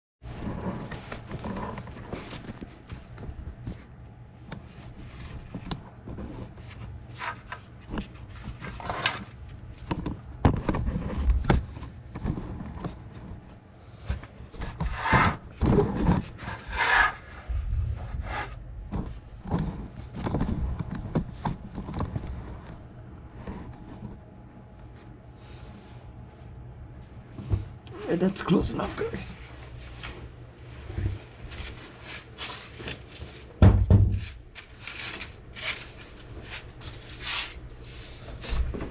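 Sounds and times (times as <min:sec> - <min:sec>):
objects rubbing and scraping: 0:00.2 - 0:26.6
faint steady hum: 0:00.3 - 0:38.9.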